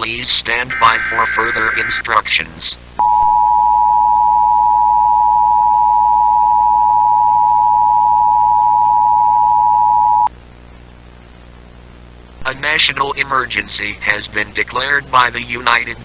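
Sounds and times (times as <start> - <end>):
faint low hum: 0.7 - 2.0
two-tone alert signal: 0.7 - 2.0.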